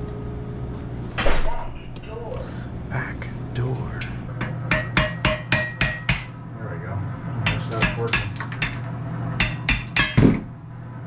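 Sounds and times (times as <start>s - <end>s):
steady low hum: 0.0s - 11.0s
tools clanking on metal pipes: 7.5s - 10.4s.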